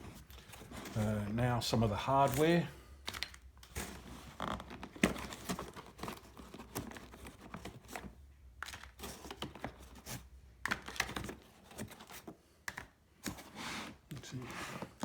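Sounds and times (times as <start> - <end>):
plastic packaging crinkling: 0.2 - 10.0.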